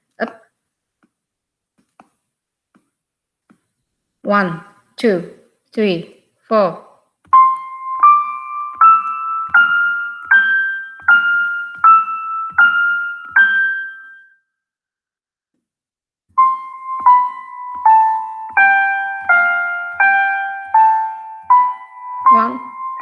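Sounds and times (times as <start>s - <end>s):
piano keyboard melody: 7.2s - 14.4s, 16.3s - 23.0s.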